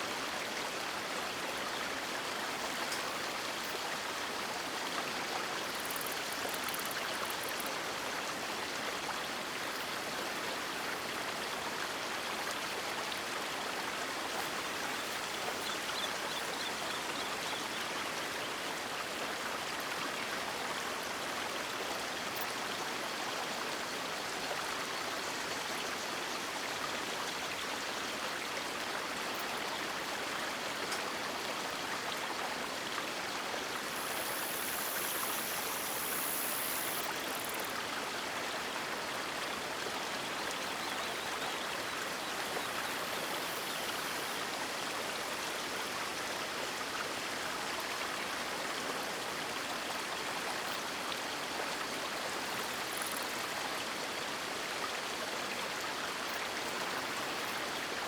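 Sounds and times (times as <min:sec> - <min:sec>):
river water flowing: 0:00.0 - 0:58.0.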